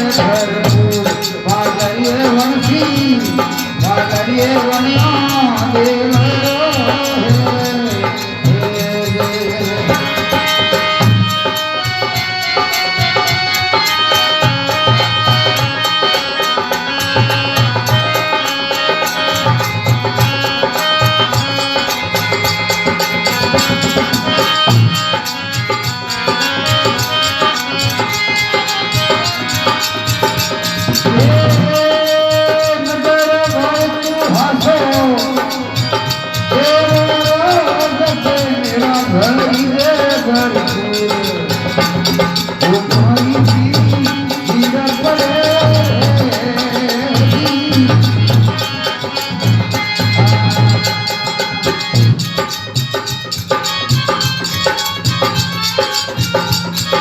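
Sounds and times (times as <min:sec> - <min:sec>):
person singing: 0:00.0 - 0:19.6, 0:26.3 - 0:52.1
devotional folk melody: 0:00.0 - 0:57.0
hand drum beat: 0:19.0 - 0:57.0.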